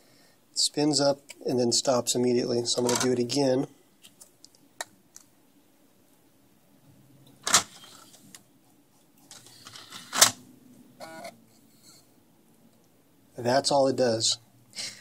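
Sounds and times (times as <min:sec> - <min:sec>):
faint motor whir: 0:11.0 - 0:12.1.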